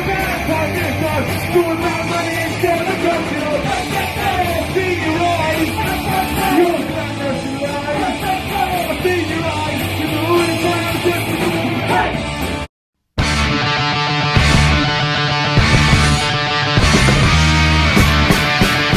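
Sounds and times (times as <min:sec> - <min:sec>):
shouted vocals: 0:00.0 - 0:12.3
punk rock band playing live: 0:00.0 - 0:18.9.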